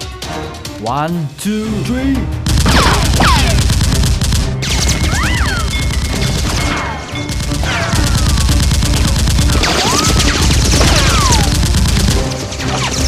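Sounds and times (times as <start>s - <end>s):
background music: 0.0s - 13.0s
gunfire sound effects: 2.4s - 13.0s.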